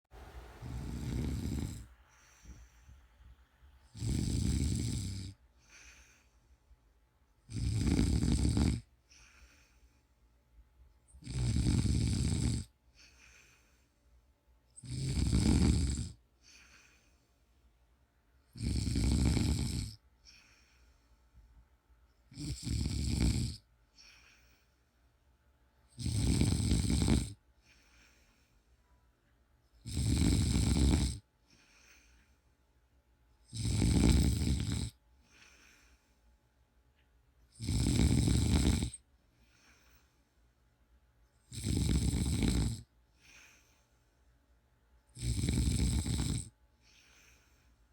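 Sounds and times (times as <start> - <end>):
faint breaths: 0.1 - 7.5, 8.8 - 11.2, 12.7 - 14.7, 16.1 - 18.6, 19.9 - 22.3, 23.6 - 29.4, 31.2 - 32.9, 33.9 - 37.1, 37.9 - 41.5, 42.3 - 45.2, 46.0 - 47.9
woman snoring: 0.2 - 2.6, 3.9 - 6.1, 7.5 - 9.4, 11.2 - 13.2, 14.8 - 16.7, 18.5 - 20.4, 22.3 - 24.3, 26.0 - 27.4, 29.8 - 31.2, 33.5 - 35.0, 37.5 - 39.0, 41.5 - 43.5, 45.1 - 47.3.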